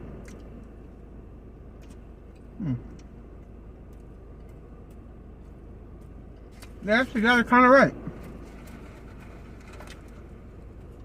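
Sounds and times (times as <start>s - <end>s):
steady low hum: 0.0s - 11.0s
person chewing food: 1.7s - 6.8s.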